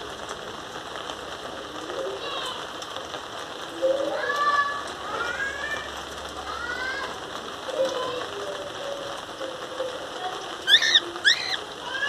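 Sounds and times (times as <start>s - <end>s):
cockatiels calling softly: 10.6s - 11.6s.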